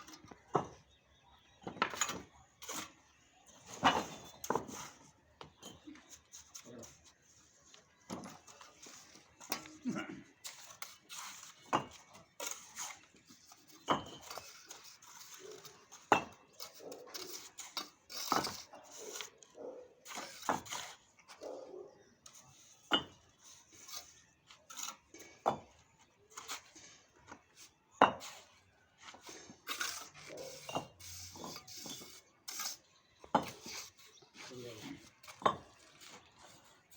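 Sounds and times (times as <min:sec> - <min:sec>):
trowel tapping bricks: 0:10.4 - 0:18.7, 0:28.0 - 0:36.5
trowel scraping mortar: 0:10.4 - 0:21.1, 0:22.3 - 0:25.5, 0:26.3 - 0:36.9.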